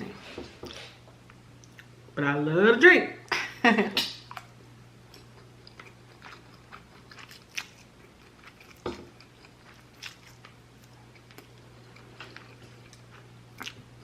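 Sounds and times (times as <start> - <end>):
steady low hum: 0.0 - 14.0
chewing and biting: 5.1 - 13.9.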